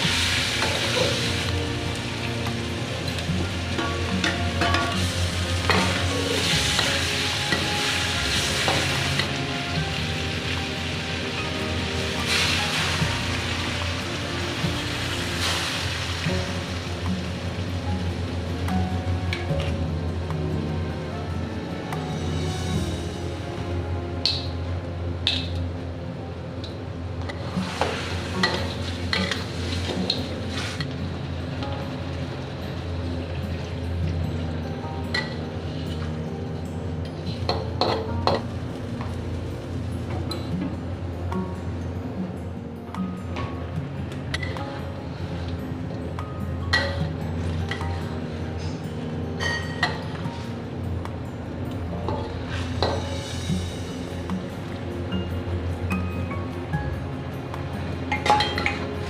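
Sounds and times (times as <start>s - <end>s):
chicken sizzling in hot oil: 0.0s - 18.6s, 27.4s - 31.4s.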